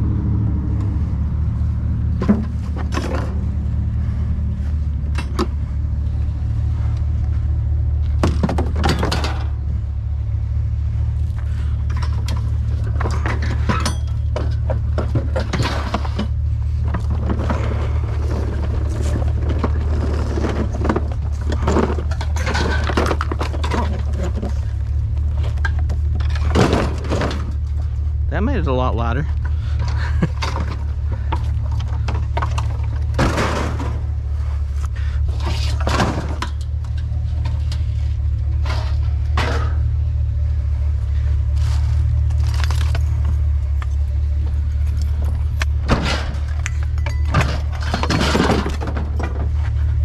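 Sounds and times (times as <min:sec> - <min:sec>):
vehicle engine idling: 0:00.0 - 0:50.0
junk clattering and scraping: 0:00.7 - 0:50.0.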